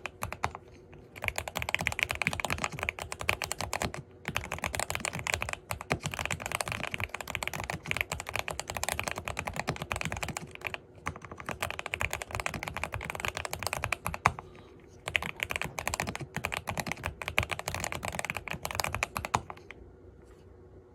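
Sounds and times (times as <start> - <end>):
mechanical keyboard typing: 0.0 - 14.4, 15.0 - 19.8.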